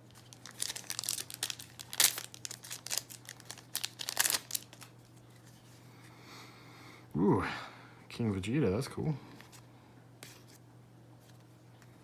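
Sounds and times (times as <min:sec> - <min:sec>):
foil wrapper crinkling and tearing: 0:00.0 - 0:05.0.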